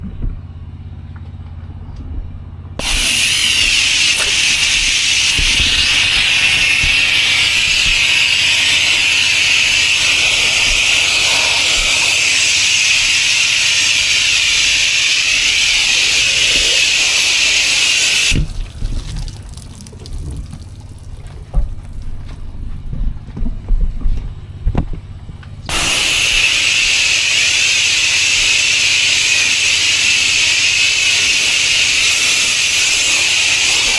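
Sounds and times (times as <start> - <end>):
pressure washer spray hissing: 2.8 - 18.8, 25.7 - 33.9
pressure washer engine running: 2.8 - 21.1, 25.7 - 33.9
engine knocks: 18.4 - 25.7.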